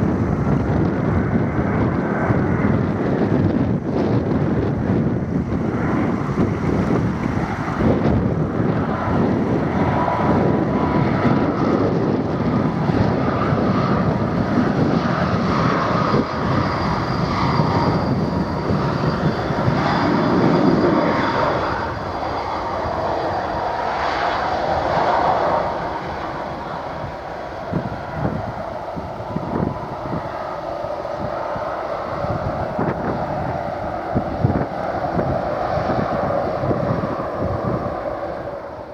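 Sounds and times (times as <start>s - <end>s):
jet engines running: 0.0s - 38.9s
thin high whine: 15.2s - 38.9s.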